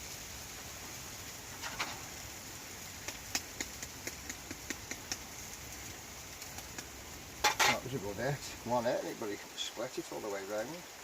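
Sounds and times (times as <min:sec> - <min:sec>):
food sizzling in a pan: 0:00.0 - 0:11.0
sharp pops and clicks: 0:02.9 - 0:07.8.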